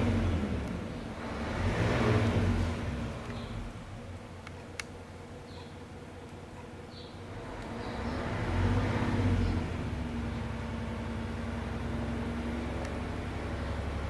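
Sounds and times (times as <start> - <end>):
minivan engine pulling away: 0.0 - 4.1, 7.2 - 14.0
road noise: 0.0 - 14.0.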